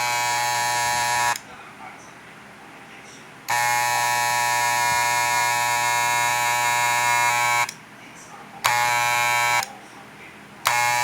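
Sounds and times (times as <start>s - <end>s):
electric hair clipper buzzing: 0.0s - 1.4s, 3.5s - 7.8s, 8.6s - 9.8s, 10.6s - 11.0s.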